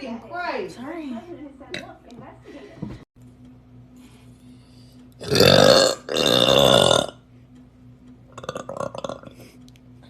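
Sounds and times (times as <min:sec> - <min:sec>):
person burping: 0:05.2 - 0:07.2, 0:08.3 - 0:09.4.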